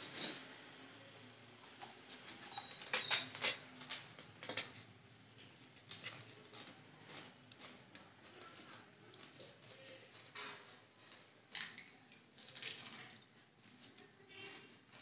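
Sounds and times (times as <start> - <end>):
crisp snack crunching and chewing: 5.9 - 10.4.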